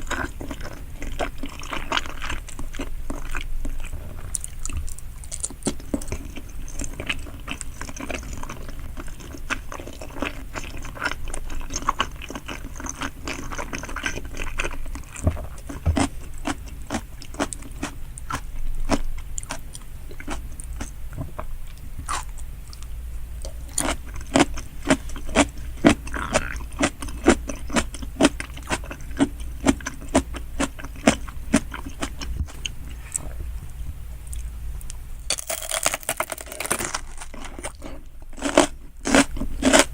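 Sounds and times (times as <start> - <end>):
chewing and biting: 0.0 - 33.4, 34.3 - 39.9
low hum: 30.2 - 35.7.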